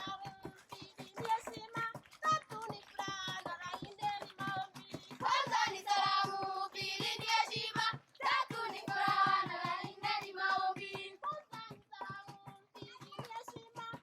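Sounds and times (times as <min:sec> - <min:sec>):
quick percussive beat: 0:00.0 - 0:14.0
children singing together: 0:05.2 - 0:11.1.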